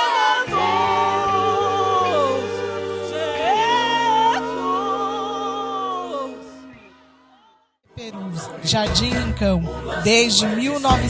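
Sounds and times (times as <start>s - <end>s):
sustained instrumental chords: 0.0s - 7.4s
gospel singers in harmony: 0.0s - 11.0s.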